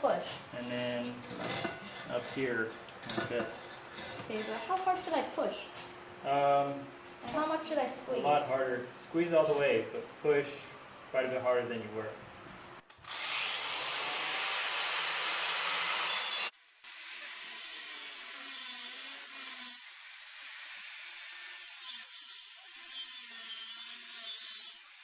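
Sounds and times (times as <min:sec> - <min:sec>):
power tool cutting steel: 0:13.0 - 0:25.0.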